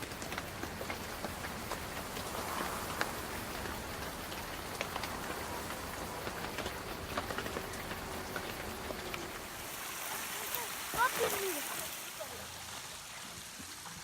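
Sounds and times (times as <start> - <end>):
rain pattering: 0.0 - 14.0.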